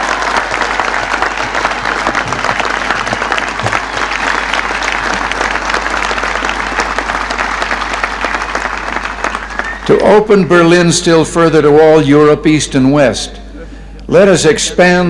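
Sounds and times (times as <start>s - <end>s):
crowd applauding: 0.0s - 10.3s.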